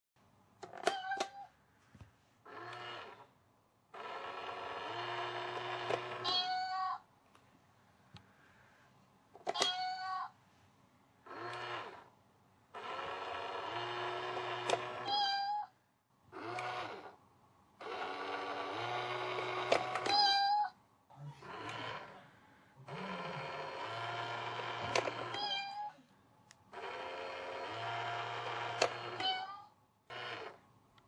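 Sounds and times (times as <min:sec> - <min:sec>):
electronic toy meowing: 0:04.7 - 0:07.0, 0:09.4 - 0:10.4, 0:14.5 - 0:15.7, 0:19.7 - 0:20.8, 0:22.9 - 0:26.0, 0:28.8 - 0:29.8.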